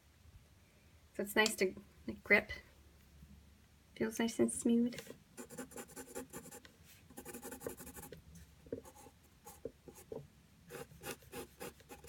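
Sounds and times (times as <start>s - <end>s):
pencil scribbling on paper: 5.4s - 8.2s, 10.7s - 12.0s.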